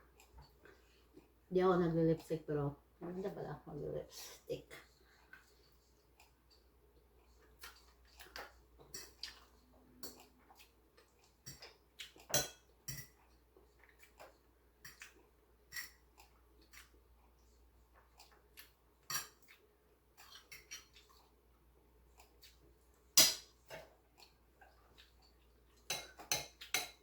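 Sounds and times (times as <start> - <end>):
person chewing: 5.0 - 22.8, 24.0 - 26.7
utensils tapping a dish: 25.9 - 27.0.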